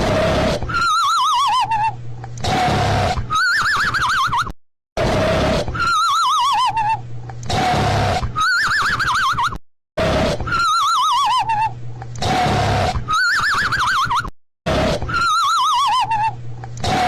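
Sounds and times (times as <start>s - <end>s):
cartoon raspy snore: 0.0s - 0.9s, 2.4s - 3.2s, 5.0s - 6.0s, 7.5s - 8.3s, 10.0s - 10.7s, 12.2s - 13.0s, 14.7s - 15.4s, 16.8s - 17.0s.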